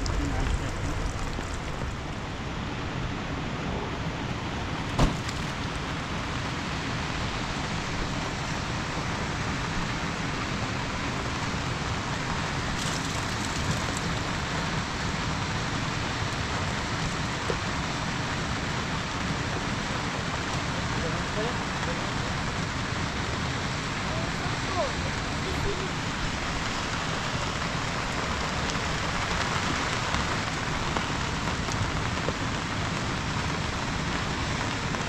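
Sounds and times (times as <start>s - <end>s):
steady rain: 0.0s - 35.0s
sharp knock: 5.0s - 5.3s.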